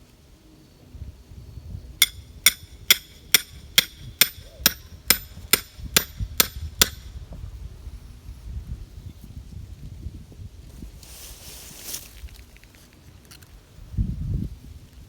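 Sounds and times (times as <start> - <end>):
hammer striking metal stake: 2.0 - 7.1.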